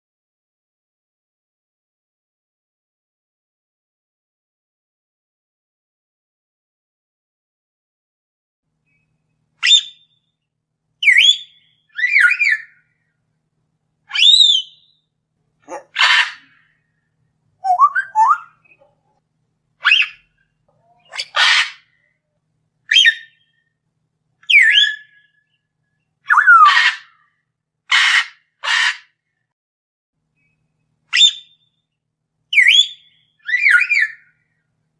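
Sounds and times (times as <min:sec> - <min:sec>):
lovebirds squawking: 0:15.7 - 0:16.7, 0:21.0 - 0:22.0, 0:26.3 - 0:27.1, 0:27.9 - 0:29.1
harsh bird screeches: 0:15.8 - 0:16.6, 0:21.0 - 0:21.9, 0:26.3 - 0:27.2, 0:27.9 - 0:29.1.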